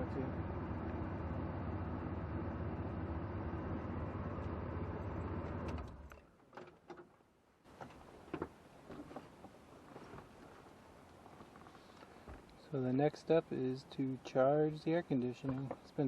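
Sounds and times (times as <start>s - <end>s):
light clicks and knocks: 15.2s - 15.9s.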